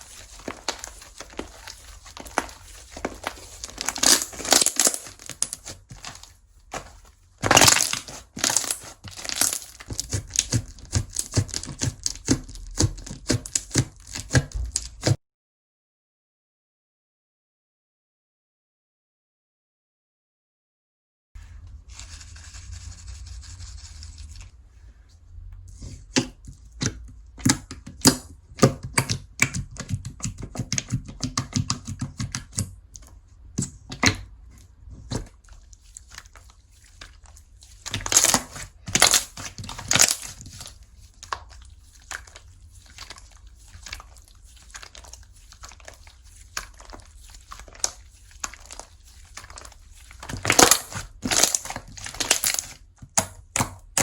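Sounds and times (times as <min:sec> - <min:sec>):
slime squelching and popping: 0:00.0 - 0:15.2, 0:26.0 - 0:54.0.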